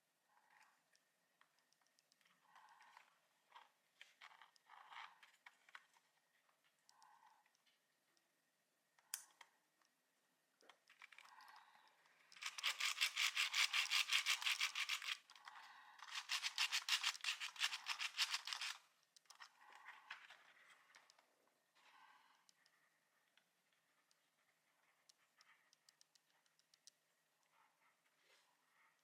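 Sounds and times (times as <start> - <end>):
rapid rubbing or scraping strokes: 12.4 - 15.2, 16.0 - 18.8.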